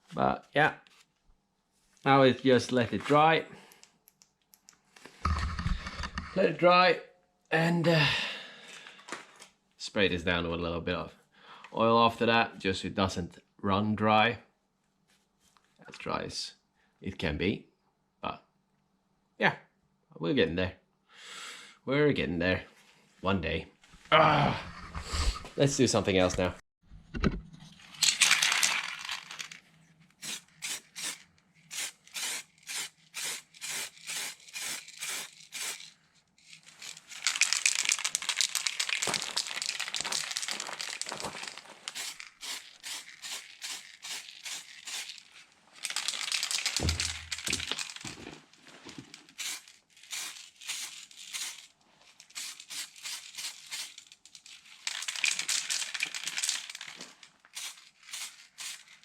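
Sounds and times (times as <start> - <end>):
aerosol spray can hissing: 30.2 - 35.9, 41.9 - 45.2, 49.4 - 51.6, 52.3 - 54.0, 57.6 - 58.9.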